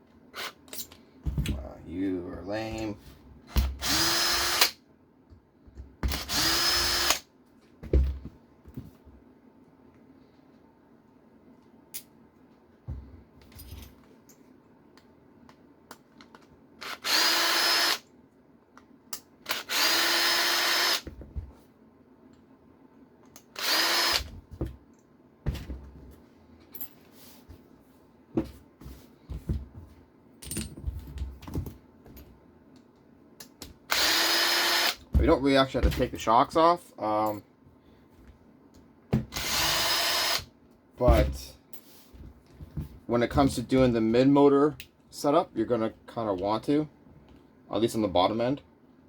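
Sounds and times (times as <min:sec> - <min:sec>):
cordless screwdriver spinning: 0:03.8 - 0:04.7, 0:06.2 - 0:07.2, 0:16.8 - 0:18.0, 0:19.5 - 0:21.0, 0:23.6 - 0:24.3, 0:39.4 - 0:40.4.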